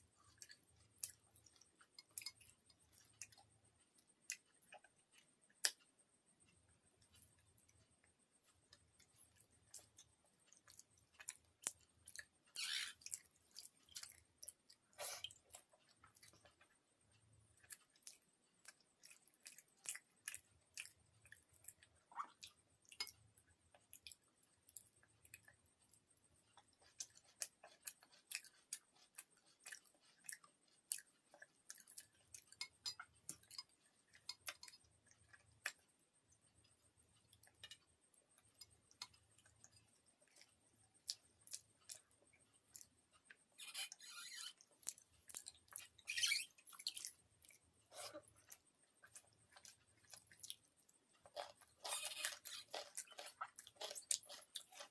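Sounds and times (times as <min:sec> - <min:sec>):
person chewing and eating: 0:00.0 - 0:54.9.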